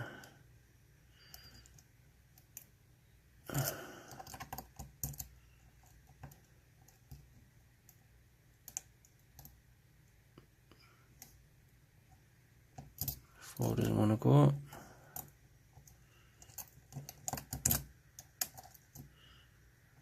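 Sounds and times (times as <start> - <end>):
lock pick clicking: 16.4 - 19.1.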